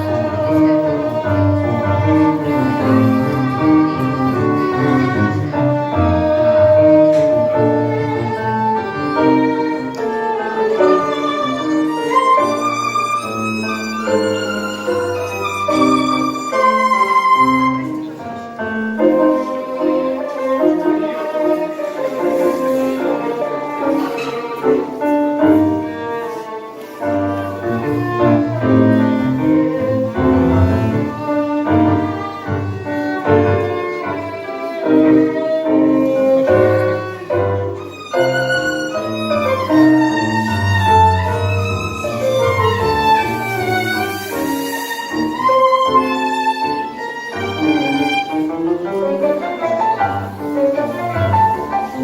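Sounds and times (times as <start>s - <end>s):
piano: 0.0s - 52.0s
violin melody: 0.0s - 52.0s
bowed bass strings: 27.7s - 32.8s.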